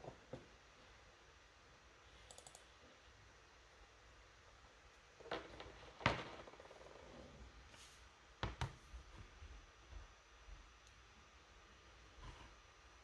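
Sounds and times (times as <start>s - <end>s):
faint ticks: 2.2s - 2.7s
light clicks: 2.3s - 2.7s.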